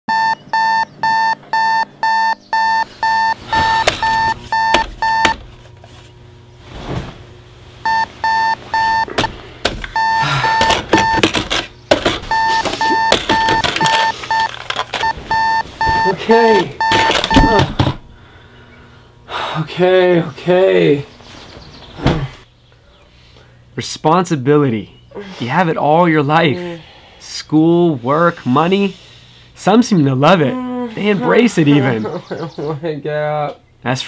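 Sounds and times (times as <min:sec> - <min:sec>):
digital alarm clock beeping: 0:00.1 - 0:05.4, 0:07.8 - 0:09.1, 0:10.0 - 0:11.3, 0:12.3 - 0:16.2, 0:16.8 - 0:17.7.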